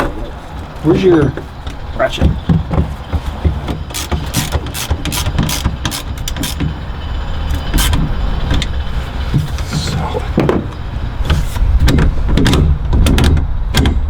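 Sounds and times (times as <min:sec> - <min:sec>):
ratchet clicking: 0:03.9 - 0:06.9, 0:07.5 - 0:08.2.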